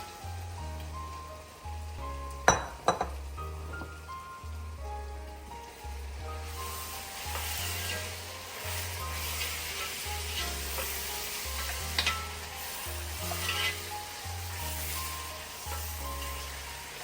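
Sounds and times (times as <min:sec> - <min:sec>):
background music with bass: 0:00.0 - 0:17.0
food sizzling in a pan: 0:00.0 - 0:17.0
utensil knock: 0:02.5 - 0:04.0.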